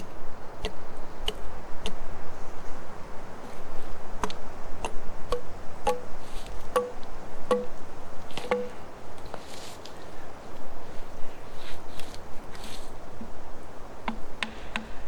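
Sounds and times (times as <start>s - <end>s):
tool striking wood: 5.3s - 6.1s, 6.7s - 7.8s, 8.4s - 8.8s, 14.1s - 15.0s.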